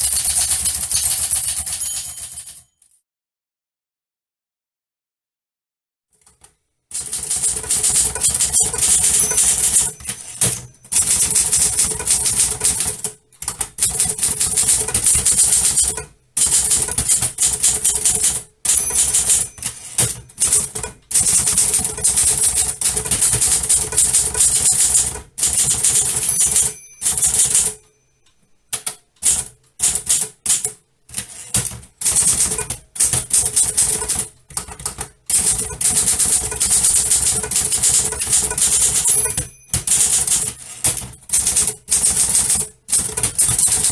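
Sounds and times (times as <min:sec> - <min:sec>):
typewriter keys clacking: 0:00.0 - 0:03.0, 0:06.2 - 0:27.8, 0:28.8 - 0:43.9
typewriter margin bell ring: 0:00.0 - 0:03.0, 0:07.2 - 0:12.8, 0:13.9 - 0:28.2, 0:35.5 - 0:43.9.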